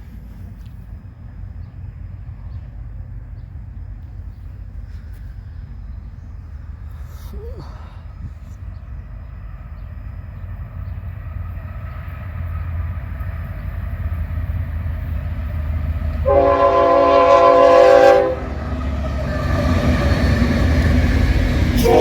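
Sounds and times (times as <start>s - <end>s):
diesel locomotive rumble: 0.0s - 22.0s
locomotive horn blast: 16.2s - 19.6s, 21.8s - 22.0s.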